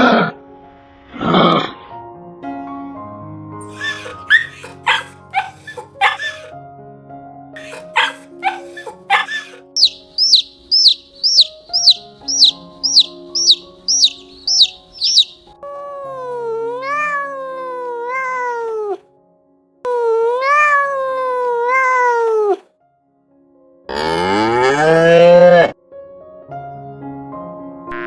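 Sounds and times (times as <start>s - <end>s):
cat meowing: 3.6s - 6.5s, 7.6s - 15.4s, 16.0s - 19.0s, 19.9s - 22.6s
quick high chirps: 3.6s - 6.5s, 7.6s - 15.4s
background music: 7.6s - 17.2s.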